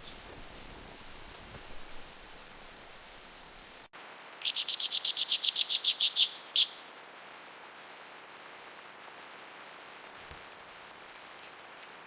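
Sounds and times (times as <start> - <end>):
faint steady hiss: 0.0 - 12.0.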